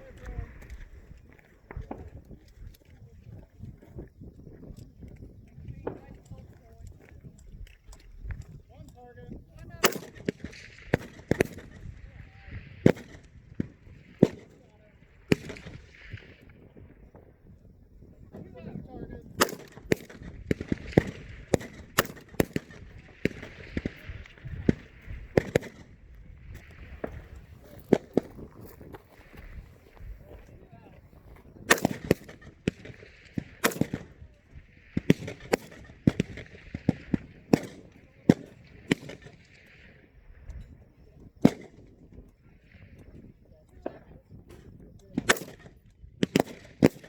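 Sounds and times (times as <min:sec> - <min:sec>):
rifle shots: 0:09.8 - 0:14.6, 0:15.3 - 0:16.5, 0:19.3 - 0:30.4, 0:31.3 - 0:39.9, 0:41.4 - 0:41.9, 0:45.2 - 0:47.0.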